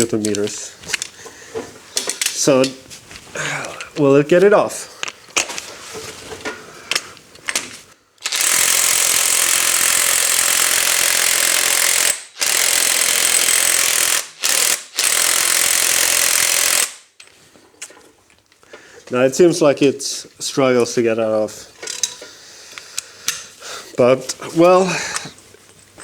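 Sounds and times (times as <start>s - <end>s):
impact wrench hammering: 8.2s - 17.0s.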